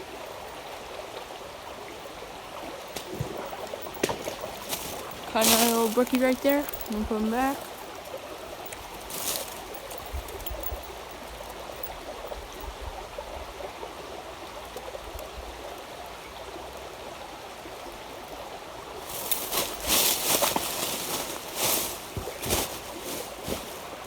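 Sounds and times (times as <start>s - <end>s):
creek running over rocks: 0.0s - 24.0s.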